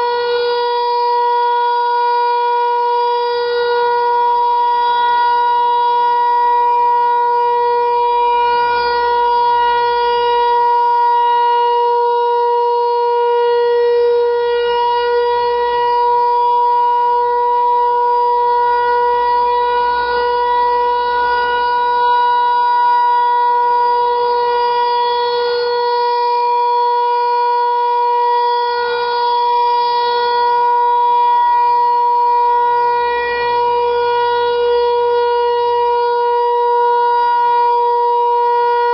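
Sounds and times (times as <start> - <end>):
siren steady tone: 0.0 - 38.9.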